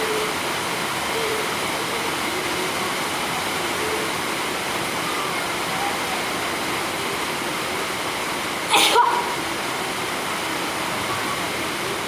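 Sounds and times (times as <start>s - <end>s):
steady background hiss: 0.0s - 12.0s
person sneezing: 8.7s - 9.3s.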